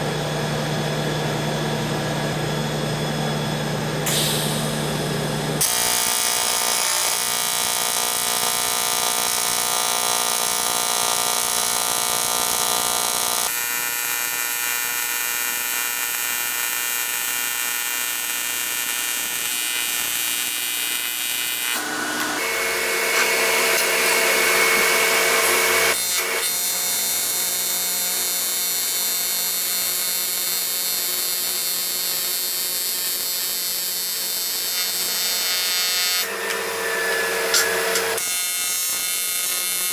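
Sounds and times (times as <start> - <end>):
welding arc buzzing: 4.1 - 39.9.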